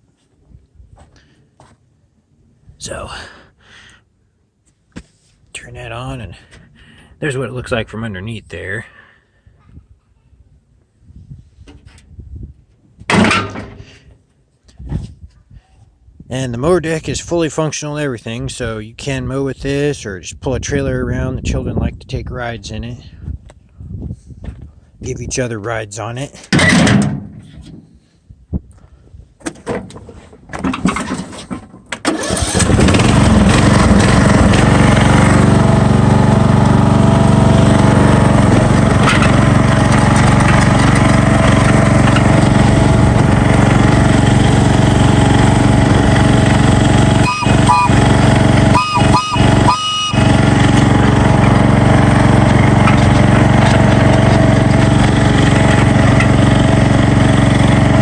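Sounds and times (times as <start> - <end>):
lawn mower engine running: 32.1 - 58.0.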